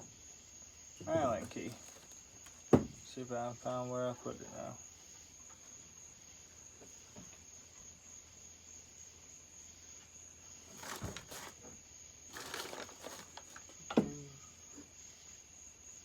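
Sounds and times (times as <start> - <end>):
tools rustling on a workbench: 1.0 - 3.0, 10.7 - 13.8
hard object knocking down: 2.7 - 3.0.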